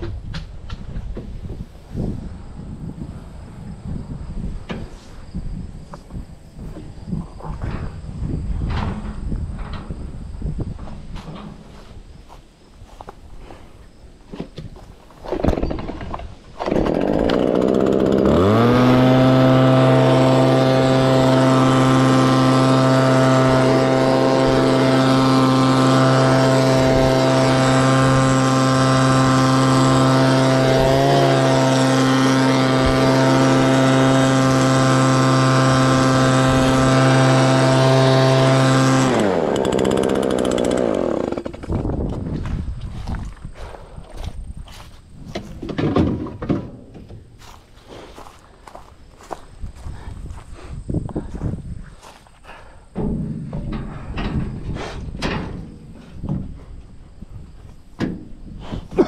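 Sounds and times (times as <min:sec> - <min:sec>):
combine harvester engine humming: 0:16.6 - 0:41.7, 0:52.0 - 0:59.0.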